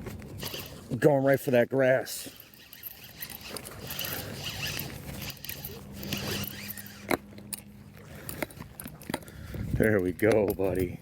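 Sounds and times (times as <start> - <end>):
fishing reel whirring and clicking: 0.4 - 1.0, 2.0 - 7.7.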